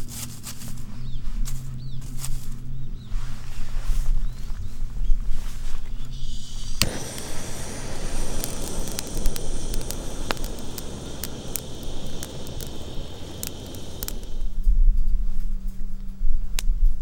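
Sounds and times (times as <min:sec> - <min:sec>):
campfire hissing: 0:06.1 - 0:14.6
fire crackles and pops: 0:06.1 - 0:14.6.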